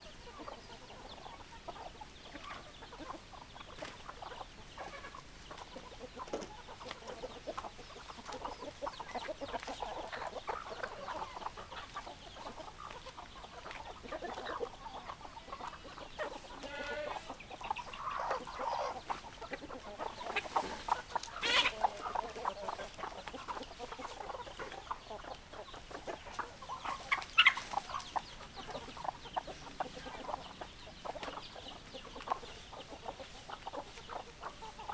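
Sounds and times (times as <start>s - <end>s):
hens clucking: 0.0s - 34.9s
high-pitched hen squawks: 16.5s - 17.4s, 20.2s - 22.4s.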